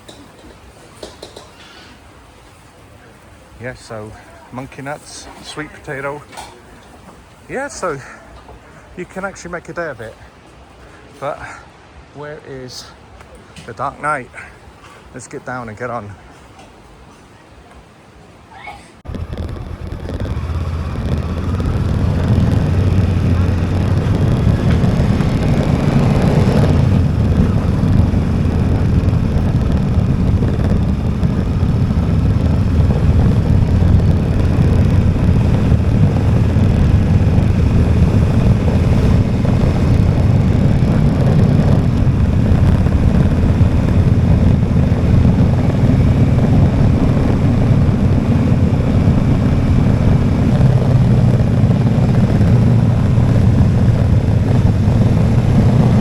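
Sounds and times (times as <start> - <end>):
motorcycle engine running: 19.0 - 56.0.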